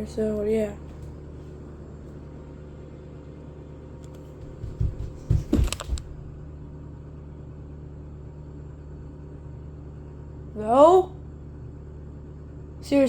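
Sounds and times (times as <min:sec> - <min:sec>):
steady low hum: 0:00.0 - 0:13.0
muffled thumps and knocks: 0:04.4 - 0:06.4.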